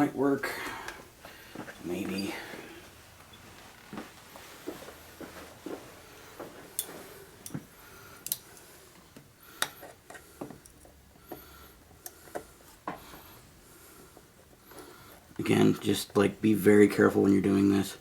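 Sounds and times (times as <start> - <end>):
pliers clicking on plastic connector: 8.2 - 8.4.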